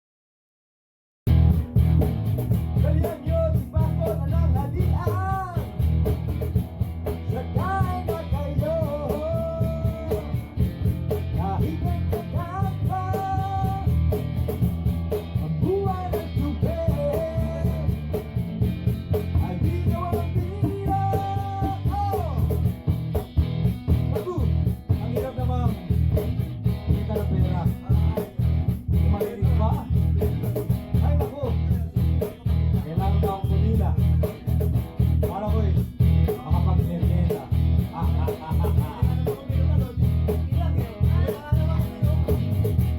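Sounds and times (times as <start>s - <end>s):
person singing: 2.8s - 5.7s, 7.3s - 10.4s, 11.3s - 14.2s, 15.6s - 18.0s, 19.3s - 22.6s, 31.0s - 33.8s, 35.2s - 42.7s.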